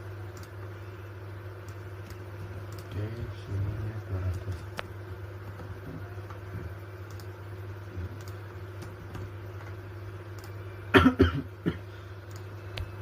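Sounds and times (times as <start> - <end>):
steady low hum: 0.0 - 13.0
person coughing: 10.9 - 12.0
faint clicks: 12.2 - 12.9.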